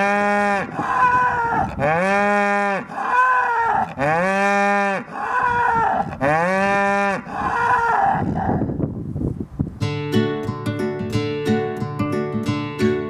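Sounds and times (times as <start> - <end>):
cow mooing: 0.0 - 8.6.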